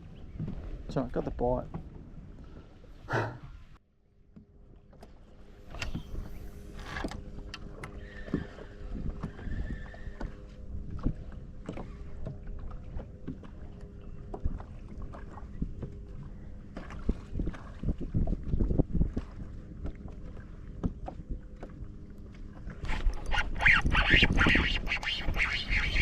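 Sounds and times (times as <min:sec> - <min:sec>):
knocks and clicks on boat: 0:00.3 - 0:02.1, 0:04.3 - 0:26.0
water splashing: 0:22.6 - 0:26.0.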